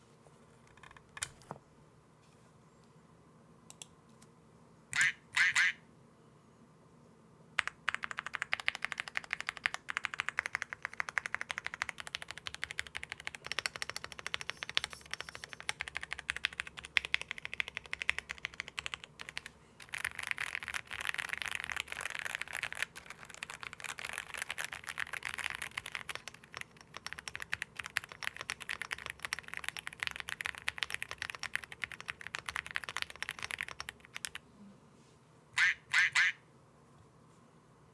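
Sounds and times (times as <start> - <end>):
fast mechanical keyboard typing: 7.6 - 34.4.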